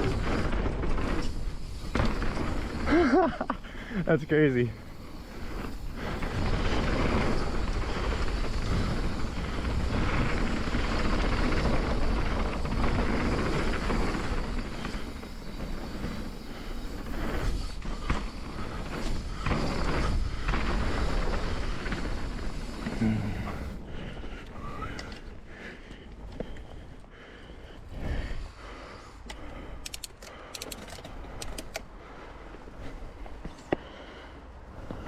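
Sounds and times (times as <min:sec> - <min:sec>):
bike knocking over rough ground: 0:00.0 - 0:04.0, 0:04.8 - 0:26.7
tyres rolling over dirt: 0:00.0 - 0:29.7.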